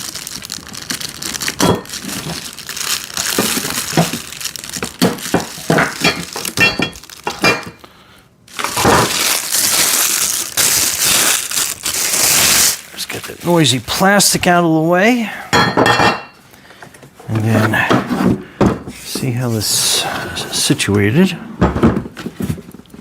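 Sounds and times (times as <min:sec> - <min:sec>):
plastic wrap crinkling: 0:00.0 - 0:07.9, 0:08.5 - 0:14.7.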